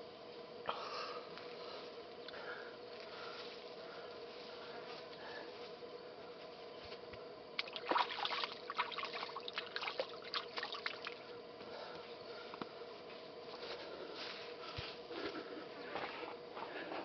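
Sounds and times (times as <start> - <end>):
faint steady hum: 0.0 - 17.0
water splashing and trickling: 7.6 - 11.2.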